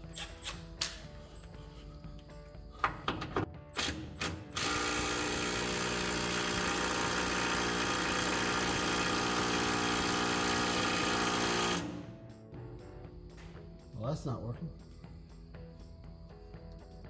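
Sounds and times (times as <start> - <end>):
impact wrench running: 3.8 - 12.2.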